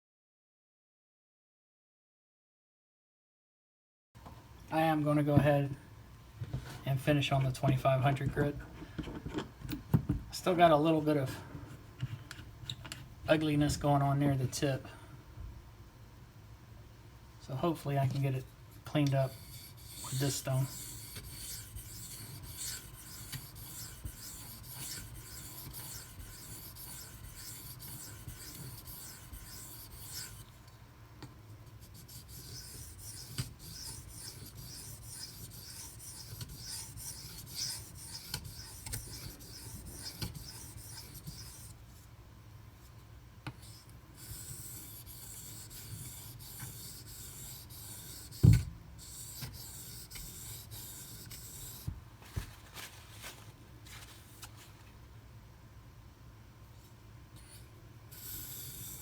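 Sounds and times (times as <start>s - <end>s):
knife scraping on whetstone: 18.9s - 30.5s, 31.8s - 41.7s, 43.6s - 48.4s, 49.0s - 51.9s, 58.1s - 59.0s.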